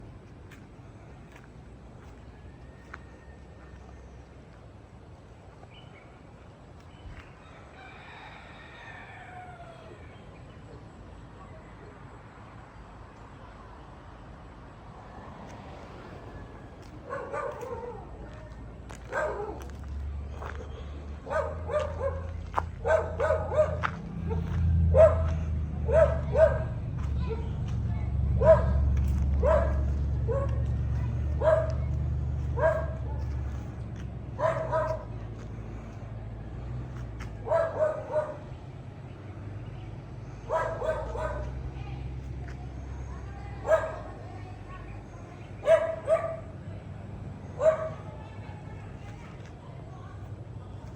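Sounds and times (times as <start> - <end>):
low outdoor rumble: 0.0 - 50.9
dog barking: 17.0 - 18.1, 19.0 - 19.9, 21.2 - 27.5, 28.4 - 30.7, 31.3 - 33.3, 34.4 - 35.2, 37.4 - 38.5, 40.4 - 41.6, 43.6 - 44.2, 45.6 - 46.6, 47.6 - 48.1
dog yelping: 21.3 - 23.8.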